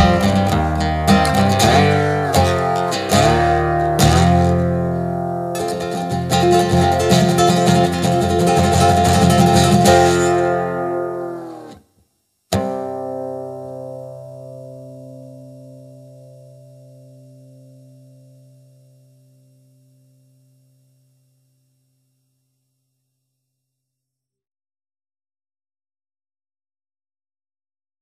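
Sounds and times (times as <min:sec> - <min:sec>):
slide guitar strumming: 0:00.0 - 0:11.8, 0:12.5 - 0:20.6.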